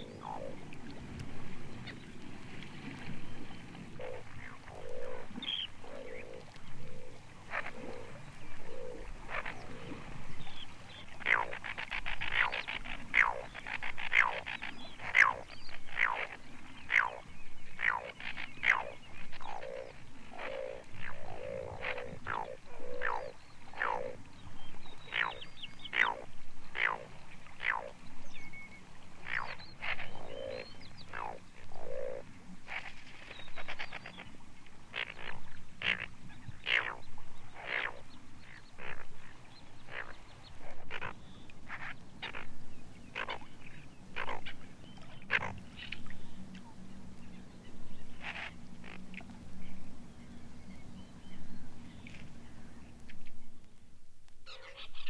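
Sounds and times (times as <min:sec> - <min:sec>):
bird calling: 0:04.0 - 0:24.2, 0:24.9 - 0:32.2, 0:54.5 - 0:55.0.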